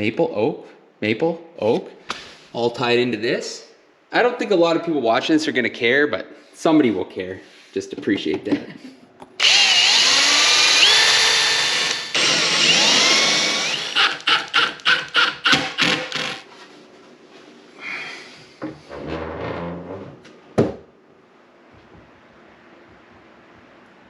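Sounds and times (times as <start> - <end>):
power drill running: 9.4 - 16.5.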